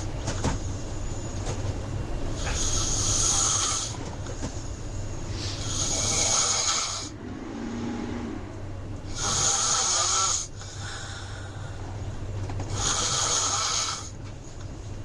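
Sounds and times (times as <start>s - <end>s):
person snoring: 2.4s - 4.0s, 5.6s - 8.4s, 9.1s - 11.6s, 12.7s - 14.1s
faint breath: 4.3s - 5.8s, 10.6s - 12.0s.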